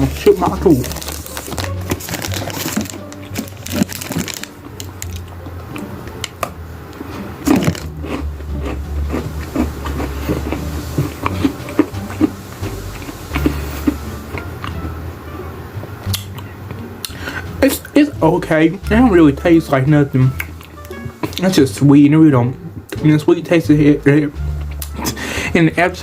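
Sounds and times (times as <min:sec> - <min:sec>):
crunchy cookie chewing: 0:00.0 - 0:15.0
steady low hum: 0:03.6 - 0:21.3.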